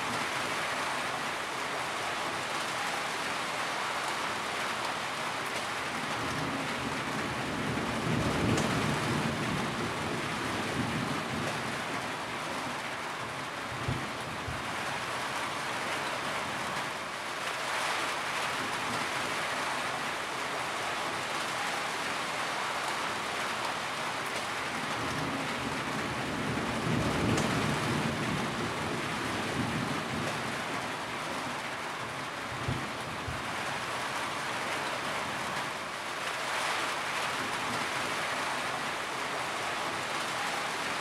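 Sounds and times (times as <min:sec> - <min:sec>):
heavy rain: 0:00.0 - 0:41.0
low roll of thunder: 0:06.2 - 0:12.0, 0:25.0 - 0:30.8.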